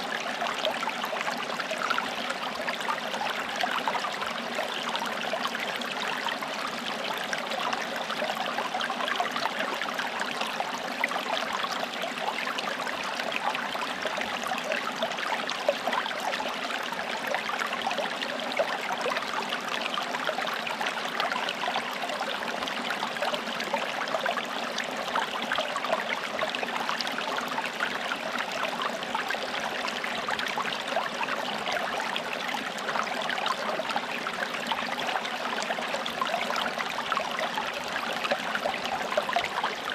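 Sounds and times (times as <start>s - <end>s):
stream flowing over rocks: 0.0s - 39.9s.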